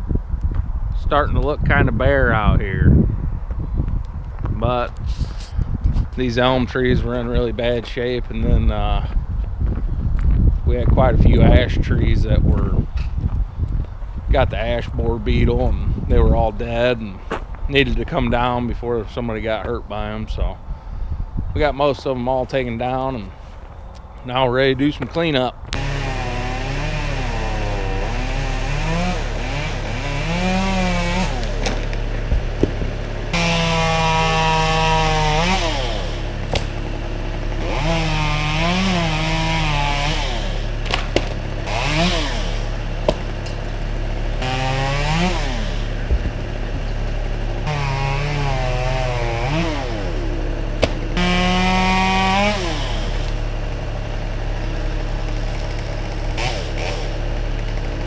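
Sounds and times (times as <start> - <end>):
chainsaw revving: 25.7 - 58.0.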